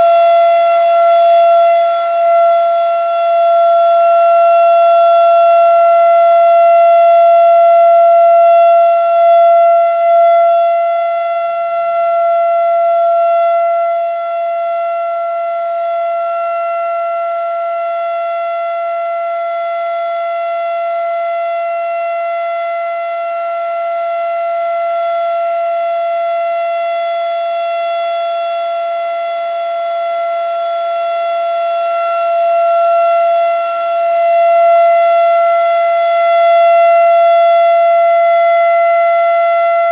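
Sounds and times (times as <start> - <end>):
electronic warning siren steady tone: 0.0 - 39.9.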